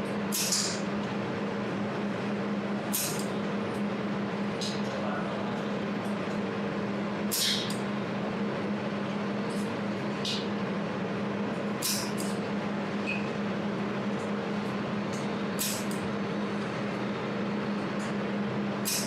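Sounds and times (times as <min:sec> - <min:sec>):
welding machine humming: 0:10.9 - 0:19.0.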